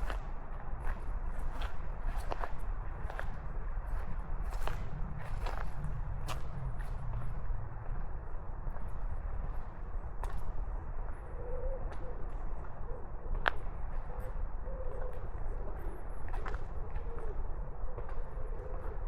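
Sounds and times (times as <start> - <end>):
steady low rumble: 0.0 - 19.0.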